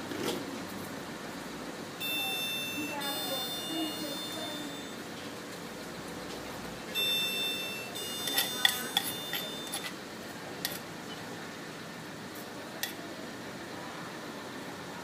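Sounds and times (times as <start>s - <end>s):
high electronic beep: 2.0s - 5.0s, 7.0s - 9.9s.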